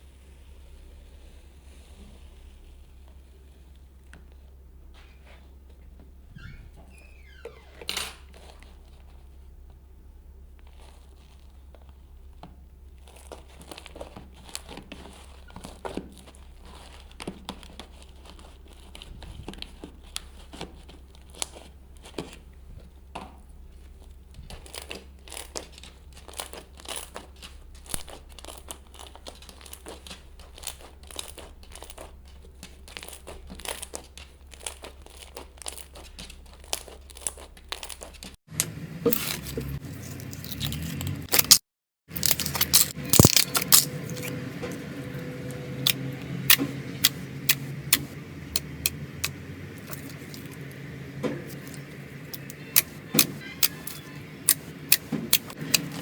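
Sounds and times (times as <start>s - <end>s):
slime crackling and popping: 10.4s - 56.0s.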